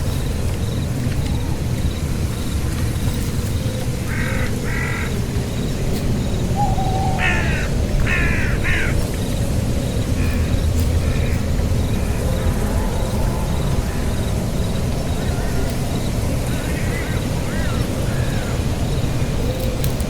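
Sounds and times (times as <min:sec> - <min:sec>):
bird harsh calls: 0:06.2 - 0:09.3.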